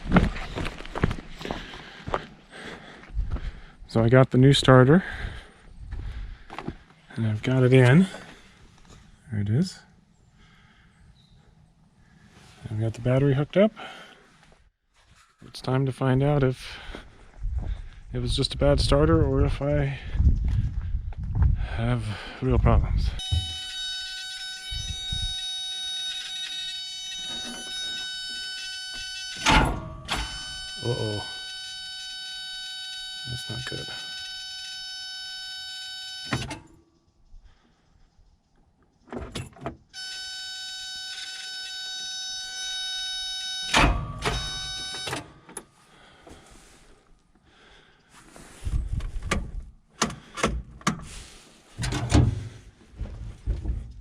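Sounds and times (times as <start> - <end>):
dull low thumps: 3.0 - 3.7, 5.1 - 6.8, 17.0 - 23.6, 48.7 - 49.8, 51.8 - 54.0
warning buzzer steady tone: 23.2 - 36.7, 39.9 - 45.5
heavy starter clunk: 29.4 - 30.6, 51.8 - 52.6.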